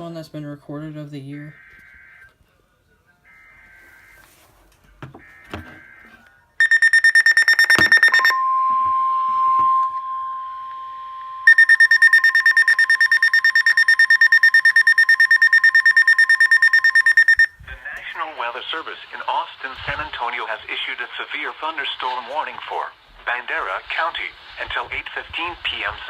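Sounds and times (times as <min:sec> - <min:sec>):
short data bursts: 0:06.6 - 0:08.4, 0:11.4 - 0:17.6
rapid pulsing alarm beep: 0:06.6 - 0:08.9, 0:11.4 - 0:17.6
steady warning tone: 0:06.6 - 0:17.6.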